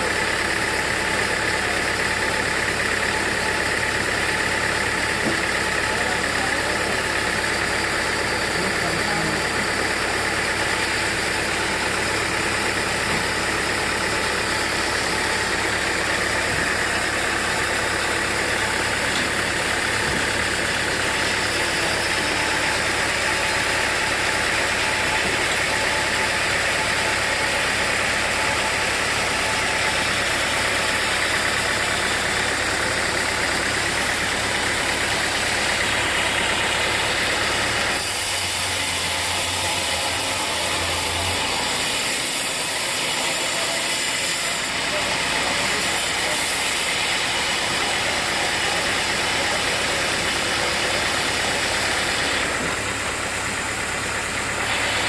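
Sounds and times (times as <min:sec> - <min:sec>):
sawmill machinery drone: 0:00.0 - 0:55.0.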